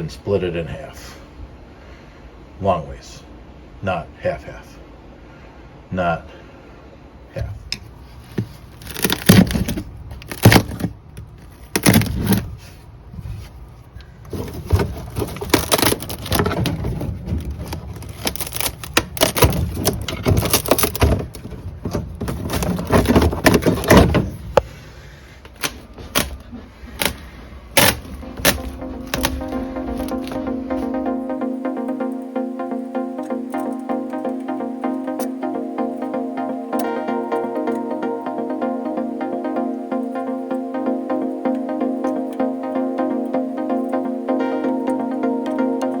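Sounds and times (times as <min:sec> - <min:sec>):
tools and parts clattering: 0:14.3 - 0:24.6.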